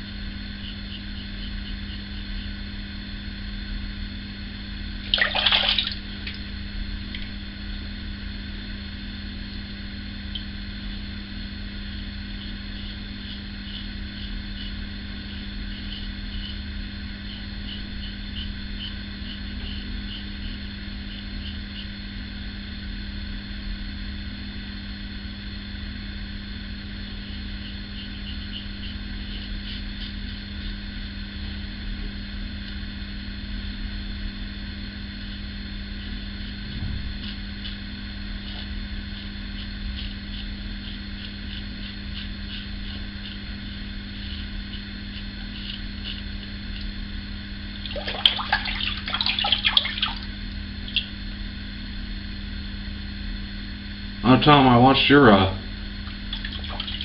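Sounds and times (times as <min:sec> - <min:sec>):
steady low hum: 0:00.0 - 0:57.0
razor scraping stubble: 0:12.3 - 0:16.7, 0:27.3 - 0:30.8, 0:36.0 - 0:47.0
running water burst: 0:56.3 - 0:57.0.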